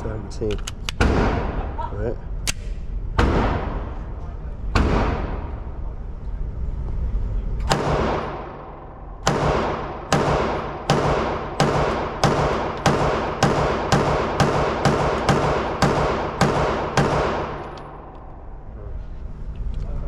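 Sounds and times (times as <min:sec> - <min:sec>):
gunshots with echoing tail: 0:01.0 - 0:01.7, 0:03.2 - 0:04.0, 0:04.7 - 0:05.8, 0:07.7 - 0:18.2.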